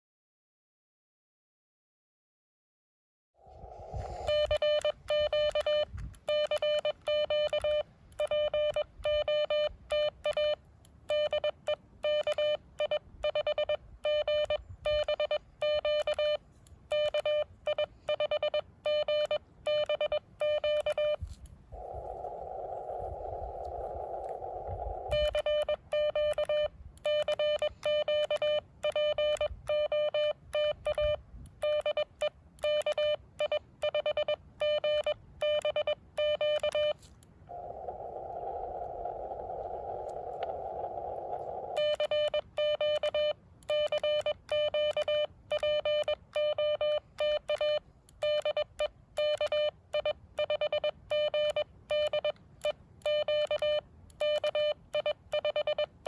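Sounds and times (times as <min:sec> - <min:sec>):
radio band hiss: 0:03.5 - 0:04.6, 0:21.8 - 0:25.4
morse code beeping tone: 0:04.0 - 0:37.1, 0:41.5 - 0:52.4, 0:53.0 - 0:56.0.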